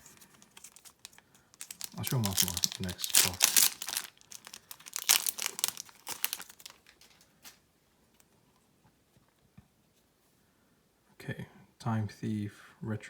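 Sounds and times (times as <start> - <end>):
foil wrapper crinkling: 0.0 - 7.6.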